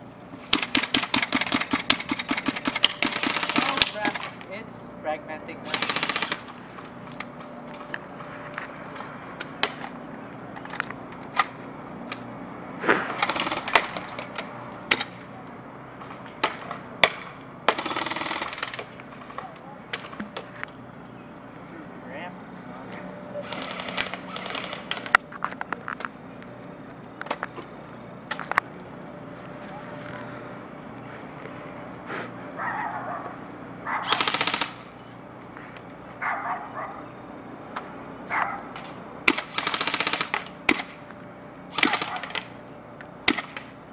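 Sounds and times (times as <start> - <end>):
airsoft gun automatic bursts: 0.5 - 4.4, 5.6 - 6.5, 13.2 - 14.1, 17.7 - 18.8, 23.4 - 25.2, 34.0 - 34.9, 39.3 - 40.9, 41.7 - 42.5.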